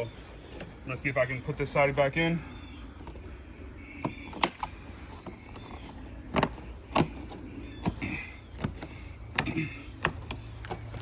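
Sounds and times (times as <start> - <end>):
steady low hum: 0.0 - 11.0
siding panel clicks and knocks: 4.0 - 4.8.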